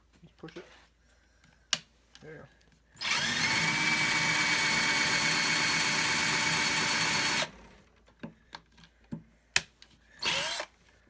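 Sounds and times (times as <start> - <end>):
power drill boring through wood: 3.0 - 7.8, 10.2 - 10.7.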